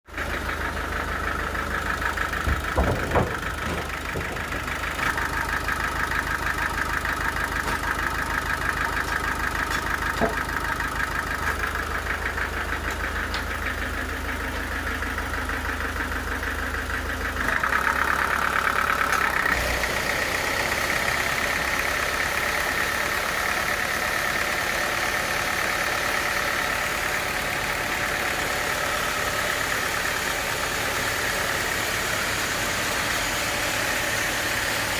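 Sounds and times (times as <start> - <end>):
sawmill machinery droning: 0.1 - 34.9
knocks: 2.4 - 5.2, 9.7 - 10.5.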